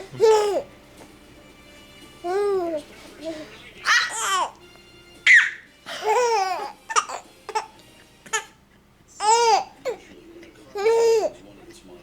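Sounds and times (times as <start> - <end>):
baby making high-pitched calls: 5.3 - 5.6.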